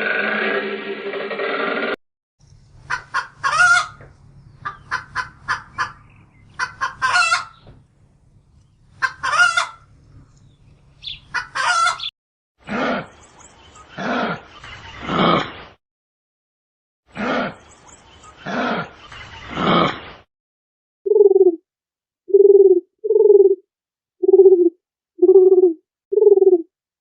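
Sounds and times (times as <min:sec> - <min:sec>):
chickens clucking: 0:02.9 - 0:07.8, 0:08.9 - 0:09.9, 0:11.0 - 0:12.1.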